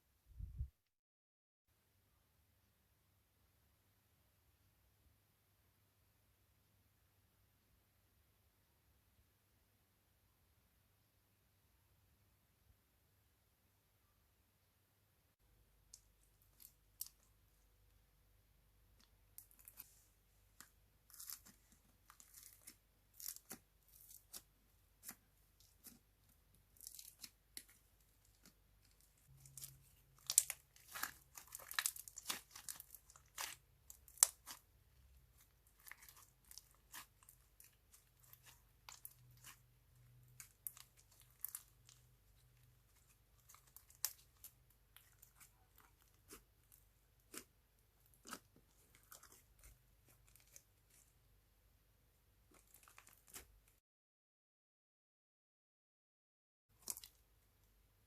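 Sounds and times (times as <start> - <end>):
slime crackling and popping: 20.6 - 51.0.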